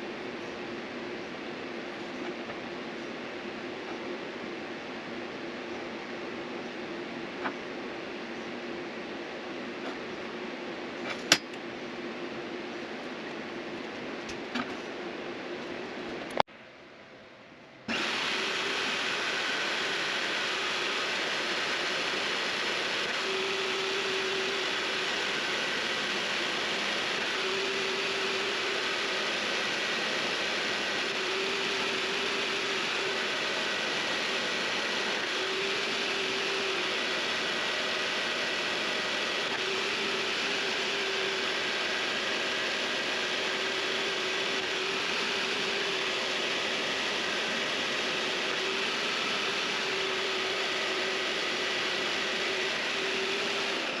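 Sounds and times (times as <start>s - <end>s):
mini lathe running: 17.9s - 54.0s.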